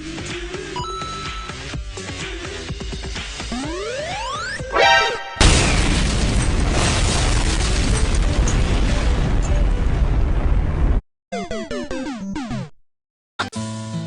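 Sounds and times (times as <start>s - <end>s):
music with stepping tones: 0.1s - 4.7s
loud explosion-like rumbling: 5.4s - 11.0s.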